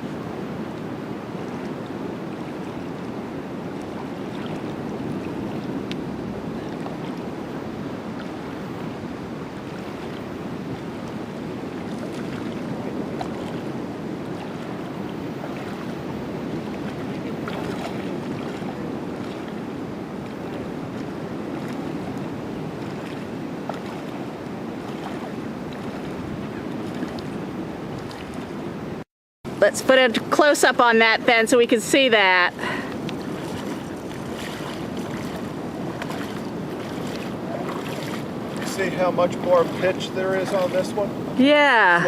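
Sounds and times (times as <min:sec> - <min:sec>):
water rushing: 0:00.0 - 0:42.0.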